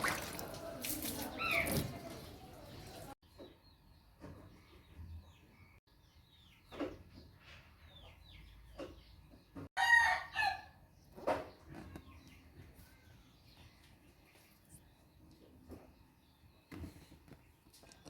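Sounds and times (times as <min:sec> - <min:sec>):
small birds chirping: 0:00.1 - 0:09.7, 0:10.9 - 0:18.0
rooster crowing: 0:09.8 - 0:10.7.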